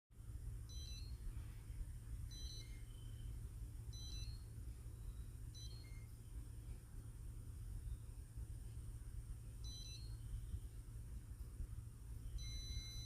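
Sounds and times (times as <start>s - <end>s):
fridge hum: 0.2s - 13.0s
fridge alarm beeps: 0.6s - 1.2s, 2.3s - 6.2s, 9.6s - 10.6s, 12.3s - 13.0s.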